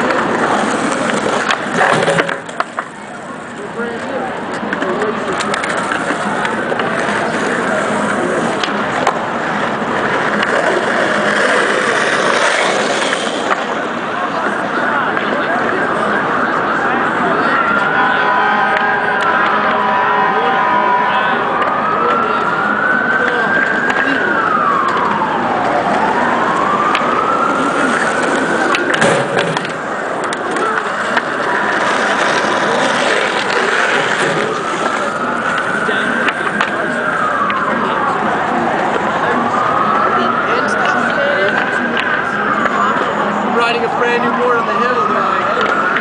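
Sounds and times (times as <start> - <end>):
skateboard clacks: 0.0 - 3.3, 3.9 - 15.8, 26.9 - 37.8
city street noise: 0.0 - 46.0
emergency siren wailing: 0.0 - 46.0
skateboard wheels rolling on pavement: 0.0 - 46.0.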